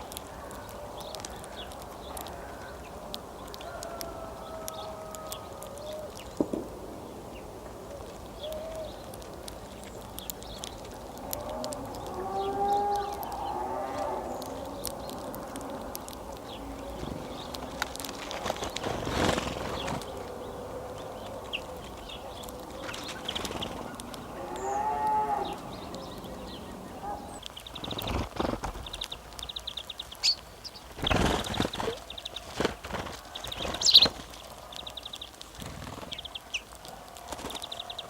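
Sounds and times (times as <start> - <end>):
outdoor background: 0.0 - 38.0
low animal calls: 11.0 - 18.2, 19.7 - 27.4.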